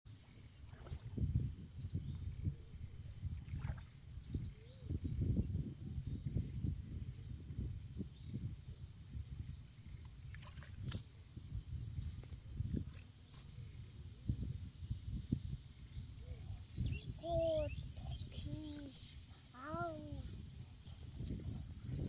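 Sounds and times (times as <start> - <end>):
bird chirping: 15.9 - 20.0.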